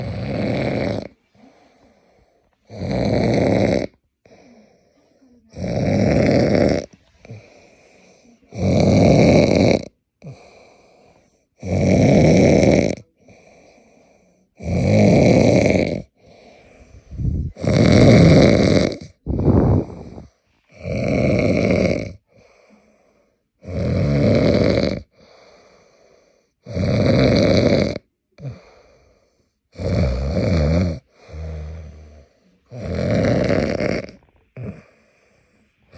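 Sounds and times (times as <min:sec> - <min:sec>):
man snoring: 0:00.0 - 0:01.2, 0:02.6 - 0:04.6, 0:05.5 - 0:07.7, 0:08.5 - 0:10.9, 0:11.6 - 0:13.5, 0:14.6 - 0:22.5, 0:23.6 - 0:25.5, 0:26.6 - 0:28.8, 0:29.7 - 0:35.2
faint breathing: 0:01.0 - 0:02.8, 0:03.9 - 0:08.6, 0:10.2 - 0:11.6, 0:13.0 - 0:14.6, 0:16.0 - 0:23.6, 0:25.0 - 0:26.7, 0:28.4 - 0:29.8, 0:31.0 - 0:35.9.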